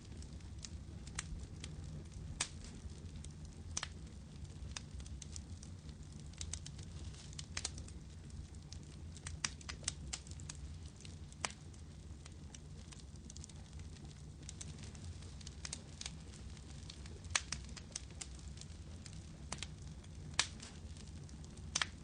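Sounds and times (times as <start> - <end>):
firewood crackling and popping: 0.0 - 22.0
low fire rumble: 0.0 - 22.0.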